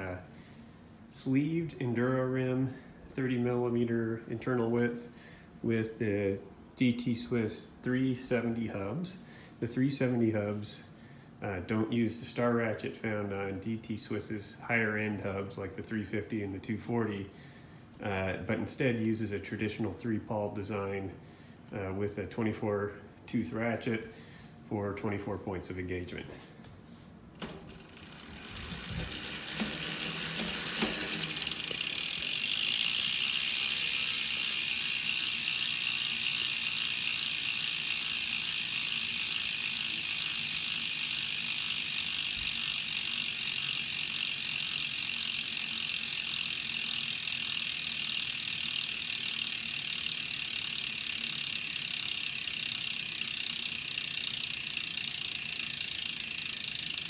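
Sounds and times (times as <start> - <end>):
bicycle hub ratchet buzzing: 27.4 - 57.0.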